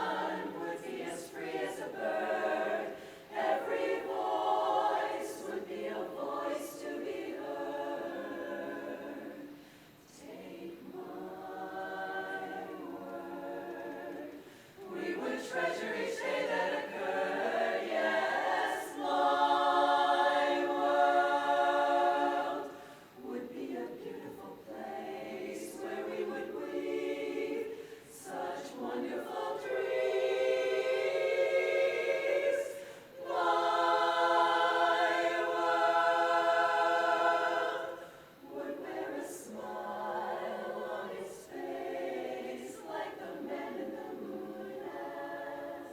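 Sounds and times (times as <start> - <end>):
women's chorus singing a cappella: 0.0 - 45.9.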